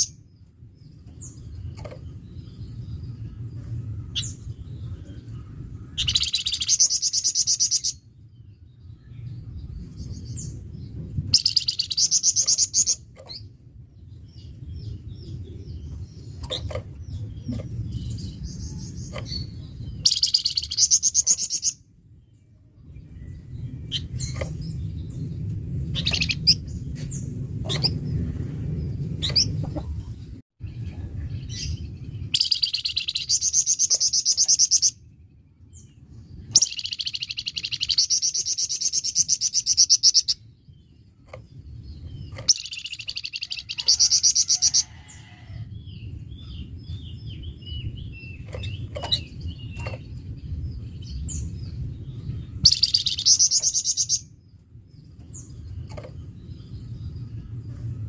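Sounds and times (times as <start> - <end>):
low background rumble: 0.0 - 58.0
songbird rattling song: 0.0 - 58.0
high bird chirps: 1.2 - 10.7, 11.4 - 13.5, 14.1 - 21.8, 22.9 - 27.1, 31.2 - 35.1, 36.3 - 40.5, 46.0 - 54.4.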